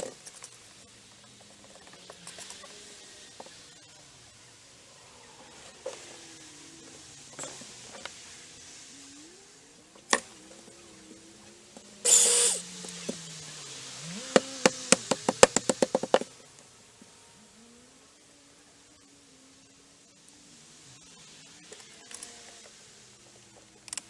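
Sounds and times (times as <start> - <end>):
power tool burst: 12.0 - 13.2
sharp knocks on wooden boards: 14.3 - 16.3.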